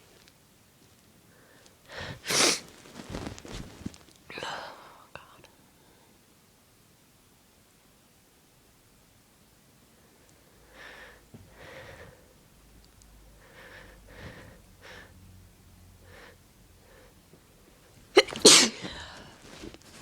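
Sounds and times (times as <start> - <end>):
person gasping breaths: 1.3 - 3.6, 13.4 - 15.2, 18.8 - 19.8
person sneezing: 2.0 - 3.3, 18.2 - 19.6.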